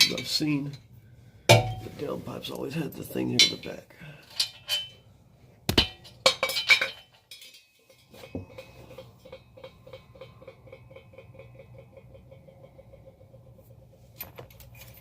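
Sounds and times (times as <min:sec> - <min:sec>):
tools clinking on metal: 0:03.2 - 0:05.0, 0:05.8 - 0:13.0.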